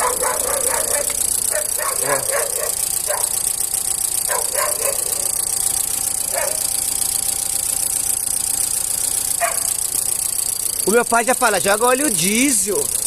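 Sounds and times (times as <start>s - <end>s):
dog barking: 0.0s - 3.4s, 4.3s - 5.4s, 6.3s - 6.7s, 9.4s - 9.8s
car engine idling: 0.0s - 13.0s.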